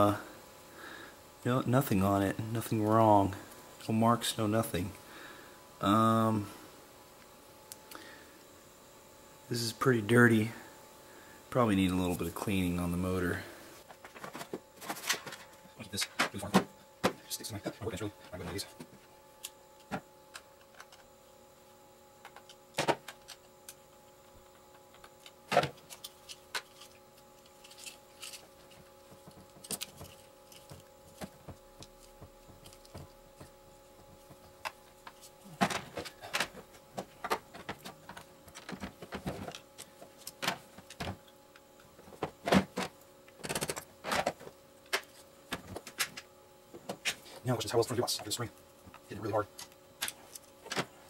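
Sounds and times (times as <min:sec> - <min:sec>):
faint steady hum: 0:00.0 - 0:51.0
small parts clicking and tapping: 0:24.7 - 0:33.5.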